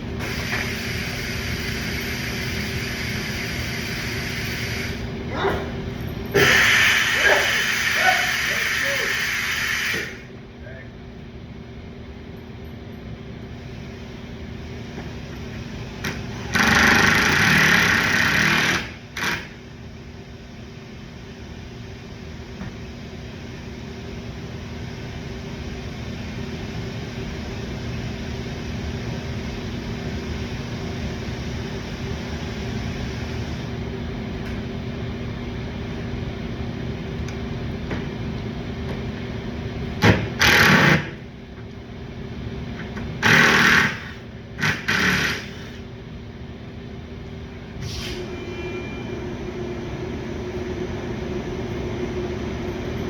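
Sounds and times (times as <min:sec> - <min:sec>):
mechanical hum: 0:00.0 - 0:53.0
impact gun bursts: 0:43.2 - 0:45.6.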